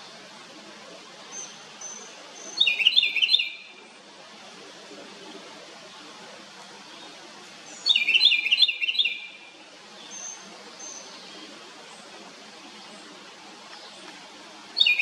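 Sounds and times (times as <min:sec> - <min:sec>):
wren singing: 0:01.3 - 0:03.8, 0:06.8 - 0:12.1, 0:14.8 - 0:15.0.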